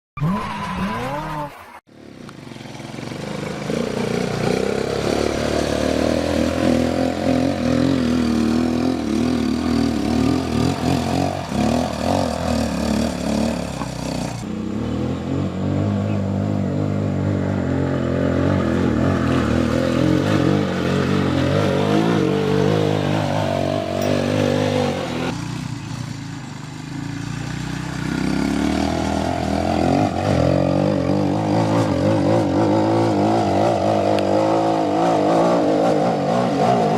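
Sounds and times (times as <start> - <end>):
quad bike engine revving: 0.2 - 36.9.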